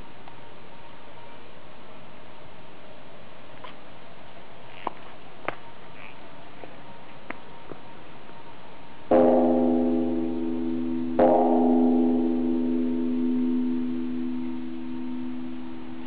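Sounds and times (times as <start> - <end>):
steady background hiss: 0.0 - 16.0
temple bell ringing: 9.1 - 16.0.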